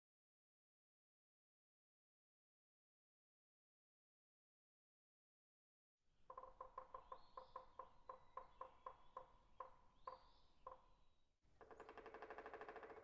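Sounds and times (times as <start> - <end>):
woodpecker drumming roll: 6.2 - 13.0
faint bird chirps: 6.3 - 13.0
woodpecker tapping: 6.3 - 13.0.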